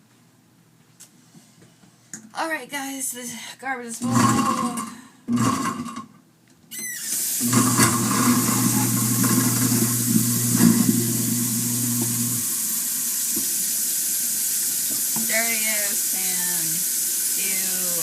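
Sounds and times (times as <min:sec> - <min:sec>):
garbage disposal grinding: 0:04.0 - 0:06.1, 0:07.0 - 0:18.0
short squeak: 0:06.7 - 0:07.2
tap water running into sink: 0:07.0 - 0:18.0.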